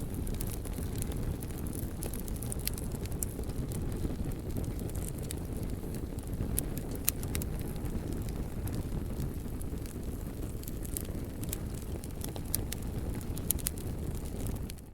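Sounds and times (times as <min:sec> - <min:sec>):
fire crackles and pops: 0:00.0 - 0:14.9
fire rumbling: 0:00.0 - 0:14.9.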